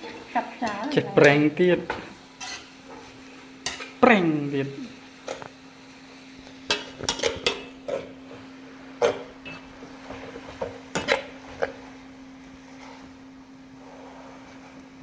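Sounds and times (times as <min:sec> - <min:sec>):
metal utensil clanking on pan: 0:00.0 - 0:04.0, 0:06.6 - 0:08.1, 0:10.9 - 0:11.3.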